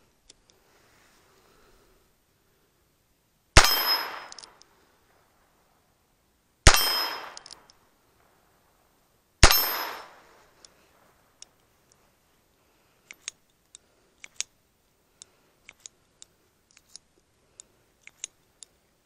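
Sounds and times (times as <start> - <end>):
revolver gunshots: 3.6 - 4.5, 6.7 - 7.6, 9.4 - 10.3.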